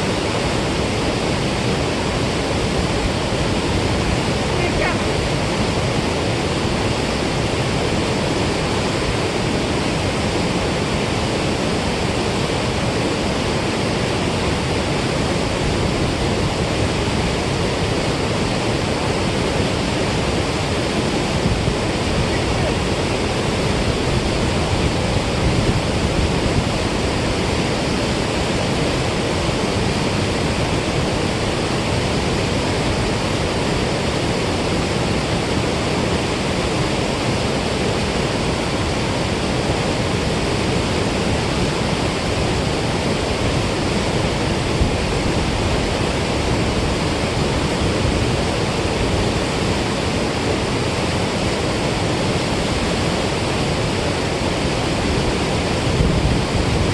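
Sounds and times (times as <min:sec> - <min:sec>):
water pouring through a spillway: 0:00.0 - 0:56.9.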